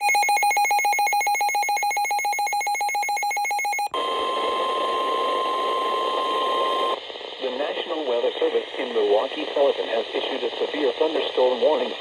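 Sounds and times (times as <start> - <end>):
rapidly pulsing electronic beep: 0.0 - 4.0
radio static: 6.6 - 12.0.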